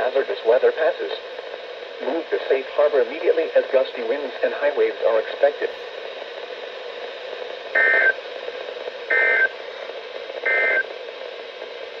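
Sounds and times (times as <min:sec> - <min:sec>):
steady radio hiss: 0:00.0 - 0:12.0
harsh digital data-tone bursts: 0:07.8 - 0:08.2, 0:09.1 - 0:09.5, 0:10.5 - 0:10.8.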